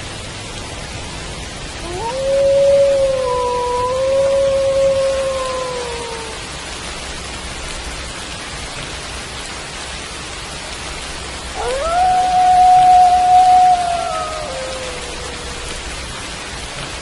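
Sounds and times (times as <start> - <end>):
rain falling: 0.0 - 17.0
wolf howling: 1.8 - 6.4, 11.6 - 16.1.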